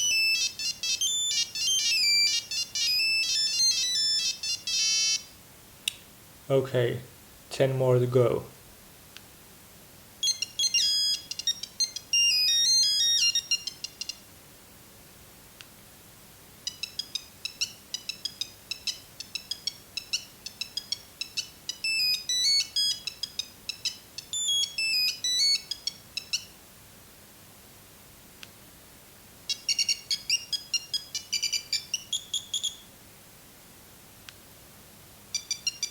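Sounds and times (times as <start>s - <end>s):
mobile phone beeping ringtone: 0.0s - 5.3s, 10.2s - 14.2s, 16.6s - 26.5s, 29.5s - 32.8s, 35.3s - 35.9s.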